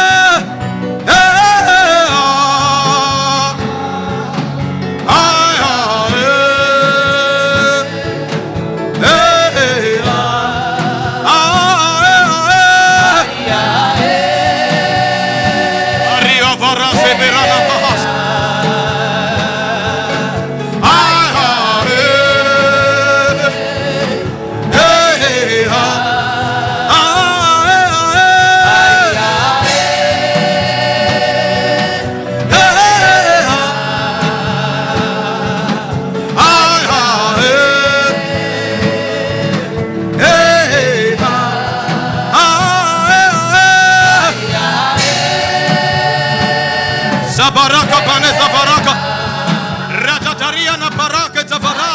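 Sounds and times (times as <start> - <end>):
instrumental backing: 0.0 - 51.9
person singing: 15.4 - 49.0.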